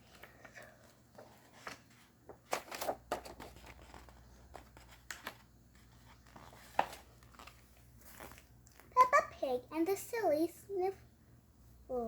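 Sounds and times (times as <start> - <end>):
paper rustling: 0.0 - 9.1.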